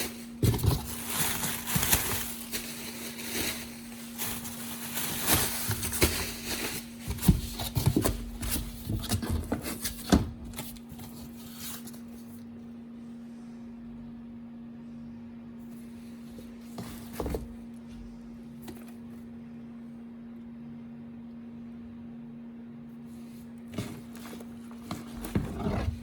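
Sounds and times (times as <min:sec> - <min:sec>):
plastic wrap crinkling: 0:00.0 - 0:10.0.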